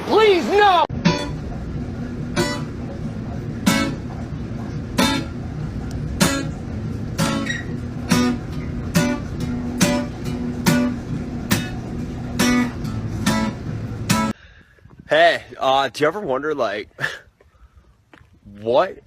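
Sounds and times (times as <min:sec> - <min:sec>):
acoustic guitar strumming: 0:00.9 - 0:14.3.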